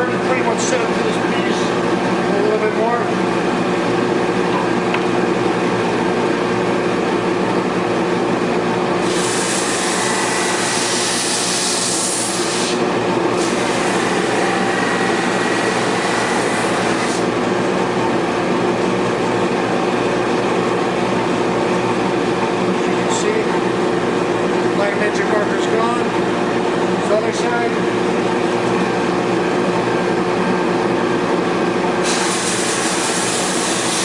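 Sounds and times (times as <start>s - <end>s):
drum sander running: 0.0s - 34.0s
dust collector running: 0.0s - 34.0s
sandpaper hissing on wood: 32.0s - 34.0s.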